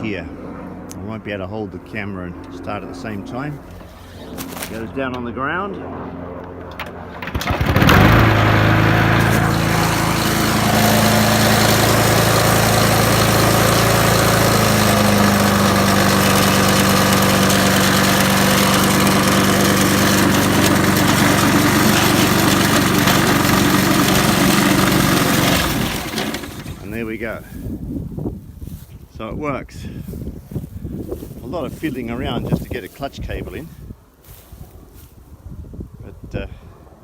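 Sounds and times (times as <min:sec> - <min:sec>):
lawn mower engine running: 0:06.8 - 0:27.3.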